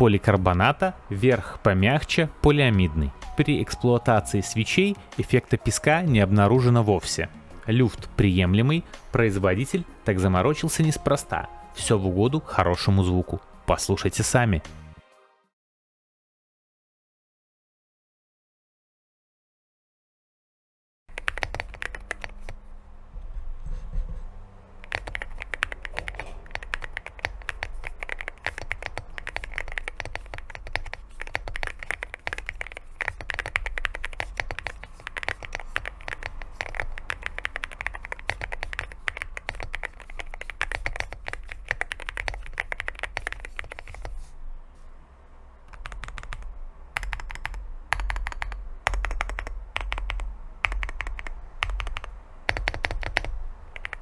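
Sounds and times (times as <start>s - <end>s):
mechanical keyboard typing: 21.1s - 22.7s, 24.8s - 44.3s, 45.7s - 54.0s.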